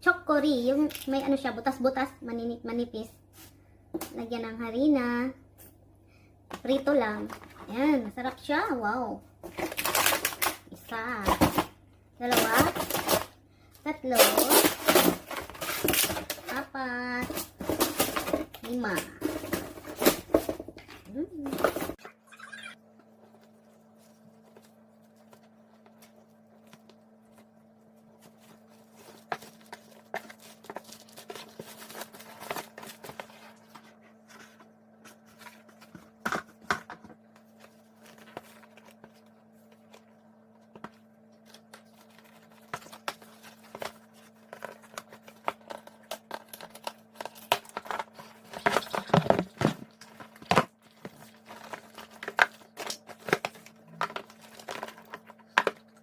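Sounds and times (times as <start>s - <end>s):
packaging crinkling and tearing: 9.5s - 10.7s, 14.1s - 16.6s, 28.3s - 34.6s, 41.3s - 56.0s.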